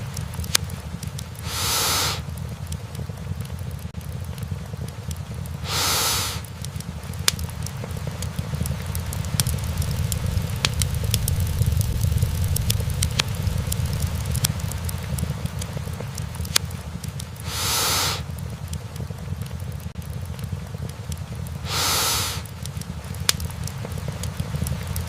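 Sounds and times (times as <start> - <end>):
wood fire crackling: 0.0 - 25.0
brief hiss: 1.4 - 2.2, 5.6 - 6.4, 17.4 - 18.2, 21.6 - 22.5.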